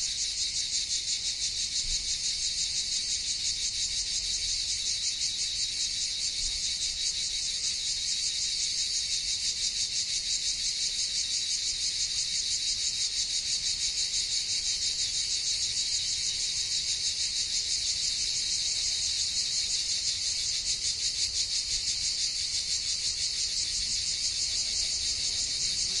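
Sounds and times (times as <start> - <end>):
cicadas droning: 0.0 - 26.0.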